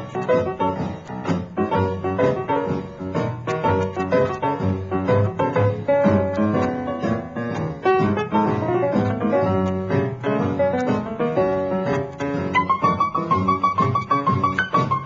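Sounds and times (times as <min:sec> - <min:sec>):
bass line: 0:00.0 - 0:15.0
piano music: 0:00.0 - 0:15.0.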